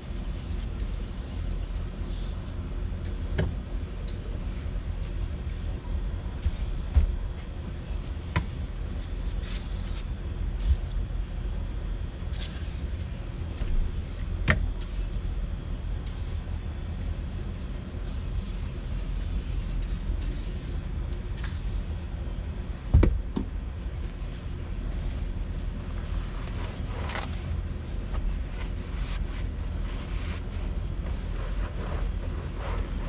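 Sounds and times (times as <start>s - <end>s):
steady low rumble: 0.0s - 33.0s
hissy swishes of wiping: 6.4s - 7.2s, 16.0s - 22.1s, 26.0s - 33.0s.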